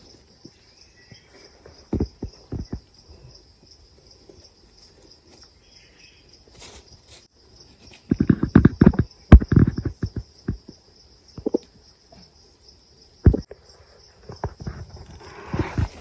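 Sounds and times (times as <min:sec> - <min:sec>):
dull thuds and knocks: 0:01.9 - 0:02.8.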